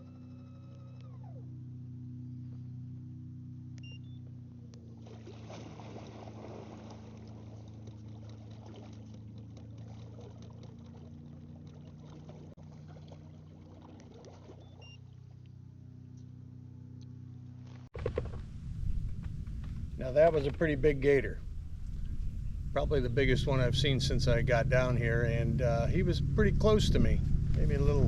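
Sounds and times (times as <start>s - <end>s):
low hum: 0.0s - 28.0s
water splashing against kayak: 4.8s - 15.8s, 17.6s - 23.6s.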